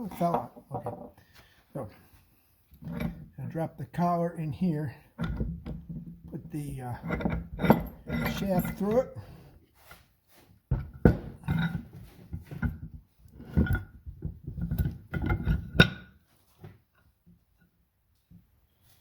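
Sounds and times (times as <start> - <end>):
metal vise parts clinking: 7.0 - 9.1, 11.5 - 11.8.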